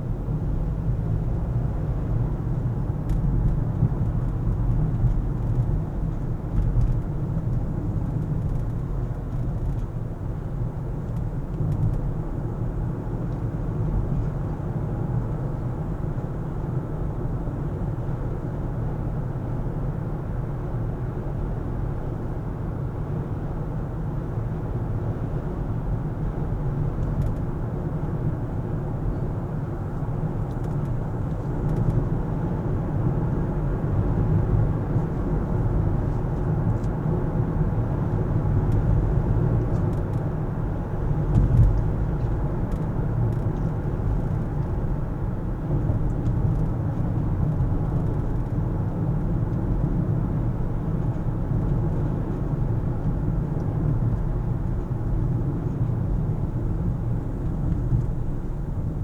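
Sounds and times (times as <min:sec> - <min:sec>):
car road and engine noise: 0:00.0 - 0:59.0.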